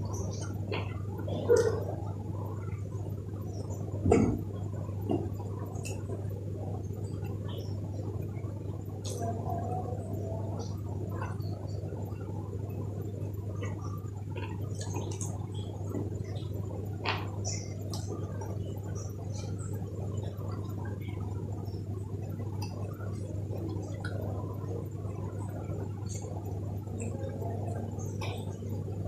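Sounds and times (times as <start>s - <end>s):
steady low hum: 0.0s - 29.0s
wet chewing and mouth sounds: 13.6s - 21.4s.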